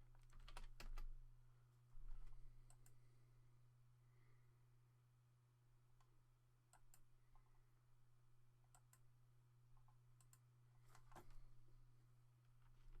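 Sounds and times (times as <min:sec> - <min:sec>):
computer mouse clicks: 0:02.7 - 0:03.0, 0:06.7 - 0:07.5, 0:08.7 - 0:09.1, 0:09.8 - 0:11.3.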